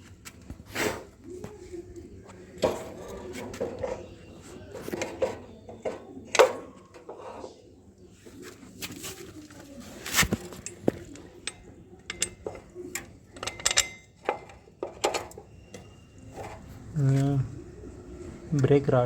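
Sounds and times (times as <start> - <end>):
metal tools clinking and knocking: 2.6 - 7.5, 10.4 - 16.7.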